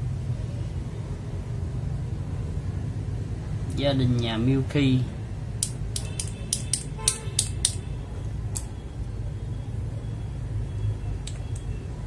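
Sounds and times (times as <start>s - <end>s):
mechanical keyboard switches clacking: 5.6s - 7.8s.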